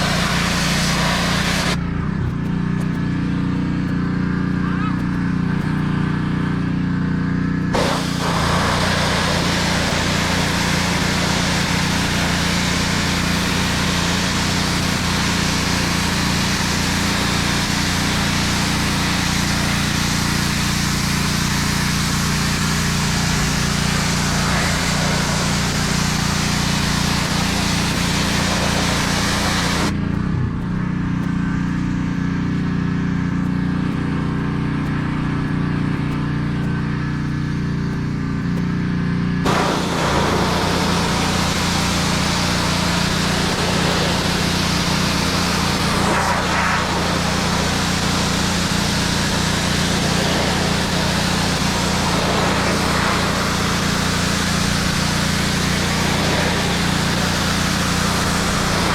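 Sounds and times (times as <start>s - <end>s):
high-pressure spray hissing: 0.0s - 1.8s, 7.7s - 29.9s, 39.5s - 58.9s
small engine running: 0.0s - 58.9s.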